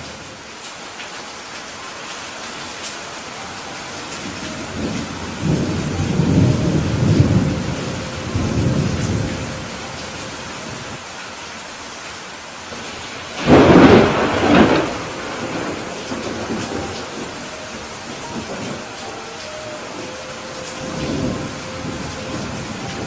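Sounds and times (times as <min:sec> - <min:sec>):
heavy rain: 0:00.0 - 0:23.0
soft rolling thunder: 0:04.2 - 0:10.8, 0:12.7 - 0:23.0.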